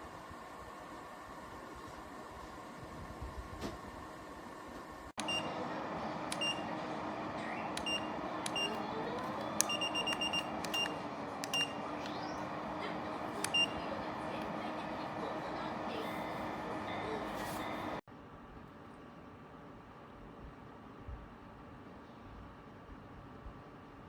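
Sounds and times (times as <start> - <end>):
short electronic beeps: 5.2 - 5.5, 7.8 - 8.8, 9.6 - 12.4, 13.5 - 13.8.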